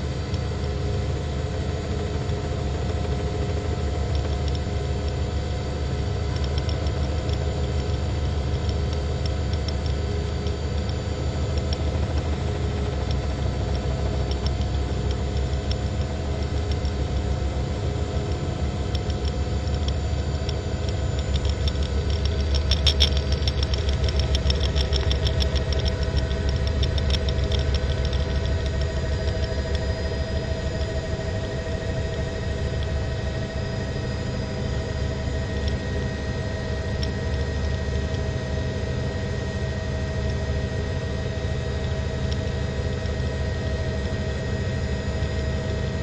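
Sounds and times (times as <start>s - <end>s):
helicopter engine and rotor: 0.0s - 46.0s
sharp crackling clicks: 6.2s - 38.8s.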